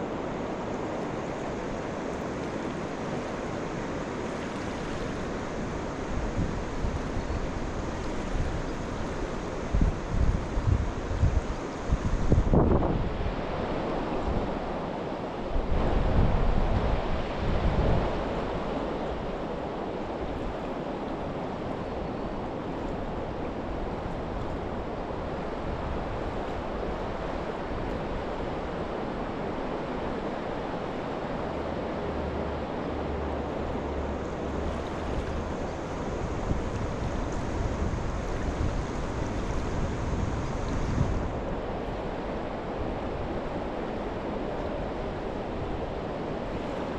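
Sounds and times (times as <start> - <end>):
river water rushing: 0.0 - 46.9
wind buffeting microphone: 6.0 - 13.5, 33.9 - 46.6.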